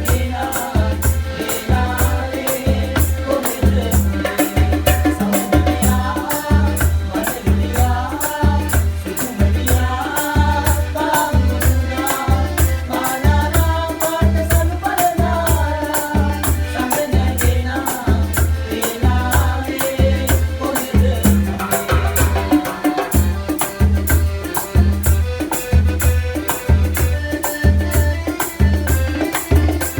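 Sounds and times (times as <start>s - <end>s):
calypso band music: 0.0s - 29.9s
shaker keeping time: 0.1s - 8.4s
bass notes: 23.2s - 28.3s.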